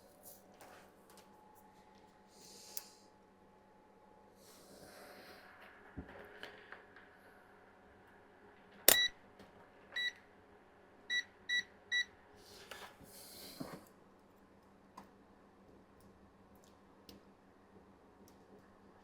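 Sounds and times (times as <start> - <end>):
meter click: 8.9 - 9.1
multimeter beeping: 8.9 - 9.2, 10.0 - 10.2, 11.1 - 12.1.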